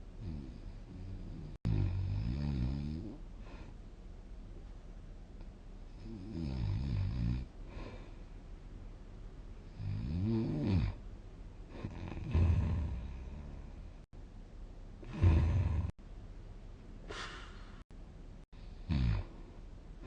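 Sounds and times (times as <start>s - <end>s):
quiet breathing: 3.1s - 3.9s, 7.6s - 8.6s, 17.0s - 20.0s
person snoring: 11.7s - 13.8s, 15.0s - 16.0s, 18.9s - 19.3s.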